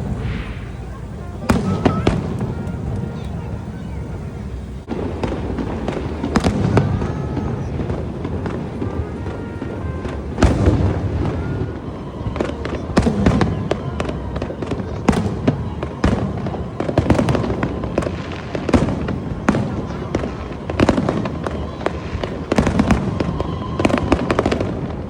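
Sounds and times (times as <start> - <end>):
low rumble: 0.0 - 12.1
fireworks bangs and crackles: 0.0 - 25.0.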